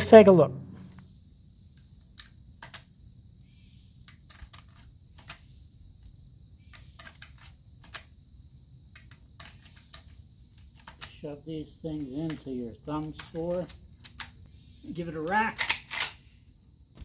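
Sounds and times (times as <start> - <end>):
metallic clicks of cartridges: 1.7 - 8.2, 8.8 - 11.3, 11.9 - 16.3.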